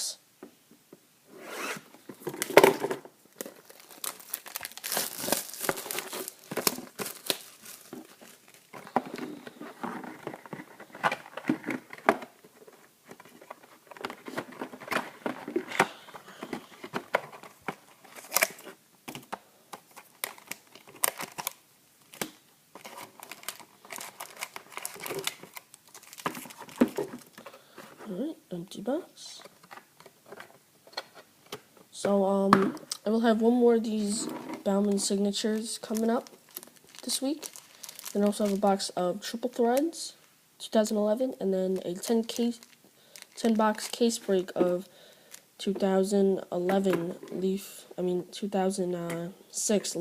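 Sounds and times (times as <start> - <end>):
packaging tearing and crumpling: 3.3 - 8.7, 18.1 - 18.7, 20.0 - 27.4, 35.6 - 38.7, 42.3 - 44.1.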